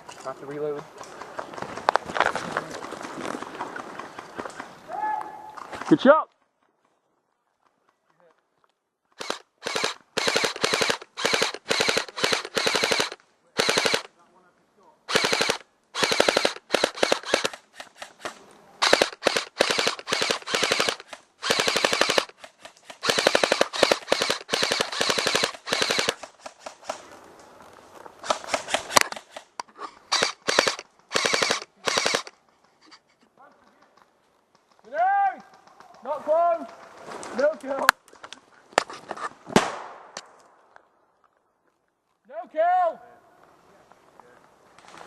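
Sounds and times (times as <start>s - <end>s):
airsoft rifle automatic bursts: 9.2s - 14.1s, 15.1s - 26.8s, 30.1s - 32.3s.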